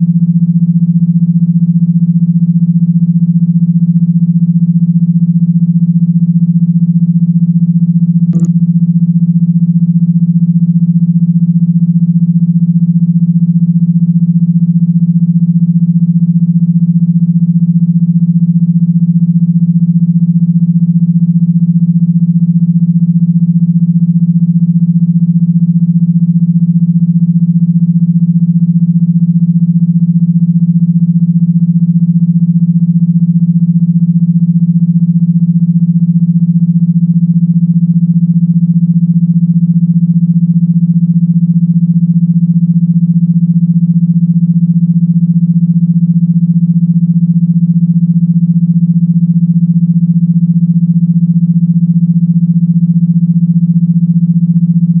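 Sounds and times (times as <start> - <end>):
low electronic buzzing tone: 0.0 - 55.0.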